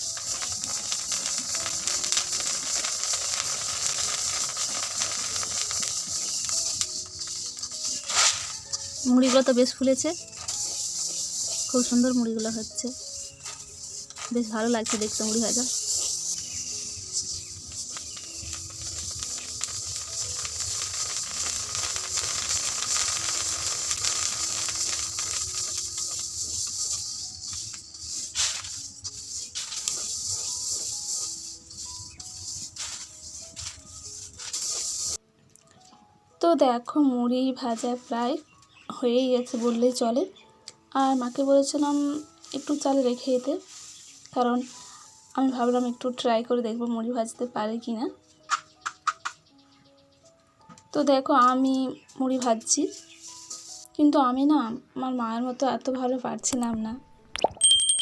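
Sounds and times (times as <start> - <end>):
rice puffing in hot sand: 0.0 - 35.2, 39.4 - 39.9, 41.0 - 46.2, 52.6 - 53.9.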